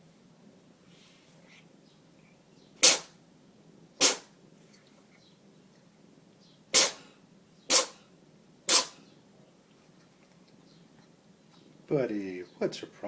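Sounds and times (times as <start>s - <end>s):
dog sneezing: 2.8s - 3.2s, 4.0s - 4.3s, 6.7s - 7.1s, 7.7s - 8.0s, 8.7s - 9.0s.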